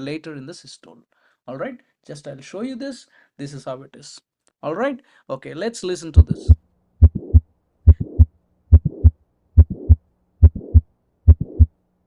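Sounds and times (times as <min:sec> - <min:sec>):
heartbeat with click and murmur: 0:06.2 - 0:11.7.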